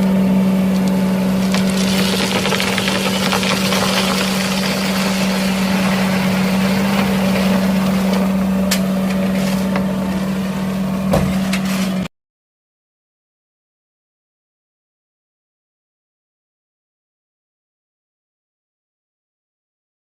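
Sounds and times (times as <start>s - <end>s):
engine running steadily: 0.0s - 12.1s.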